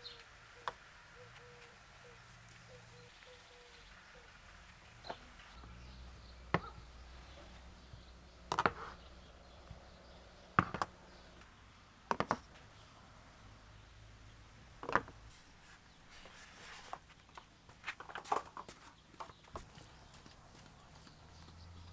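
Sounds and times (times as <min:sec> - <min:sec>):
hard objects knocking and clicking: 0:10.6 - 0:11.0.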